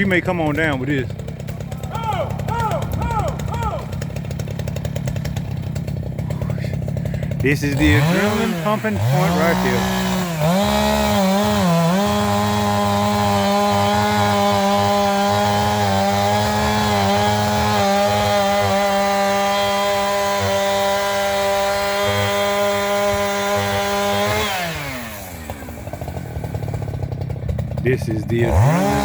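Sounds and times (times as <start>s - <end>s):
chainsaw cutting tree trunk: 0.0s - 29.0s.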